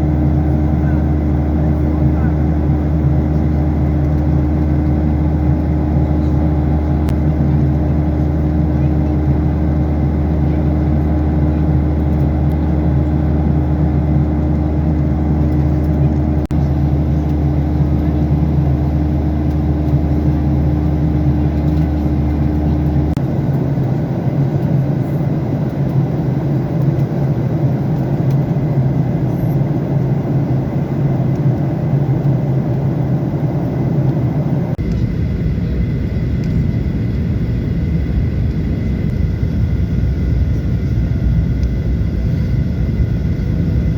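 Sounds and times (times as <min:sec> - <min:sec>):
vehicle engine hum: 0:00.0 - 0:43.9.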